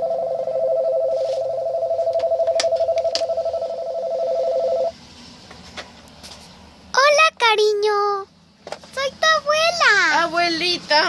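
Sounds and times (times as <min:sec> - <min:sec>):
two-tone telephone ring: 0:00.0 - 0:04.9.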